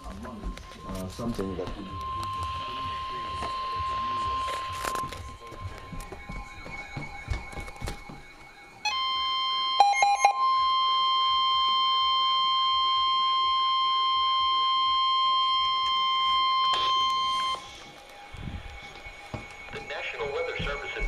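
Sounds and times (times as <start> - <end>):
steady high alarm tone: 0.0 - 21.0
short beeps: 8.9 - 17.7.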